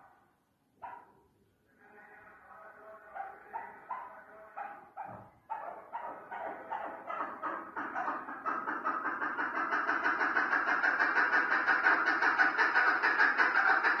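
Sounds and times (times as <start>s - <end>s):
partridge chuck calls: 3.2s - 14.0s.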